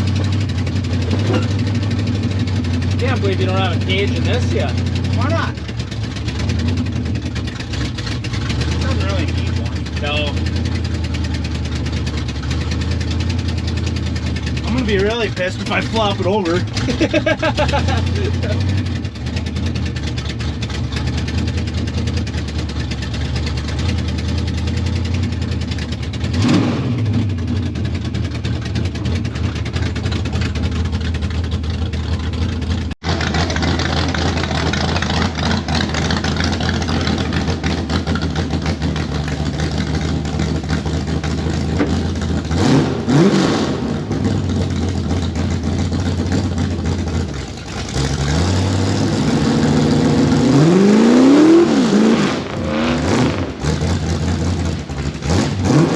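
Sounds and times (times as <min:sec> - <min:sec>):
truck engine running and revving: 0:00.0 - 0:55.9.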